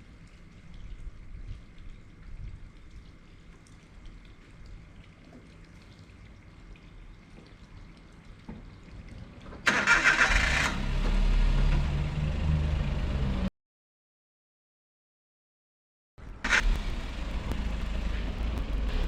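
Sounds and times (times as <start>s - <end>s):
vehicle engine idling: 16.2s - 19.0s.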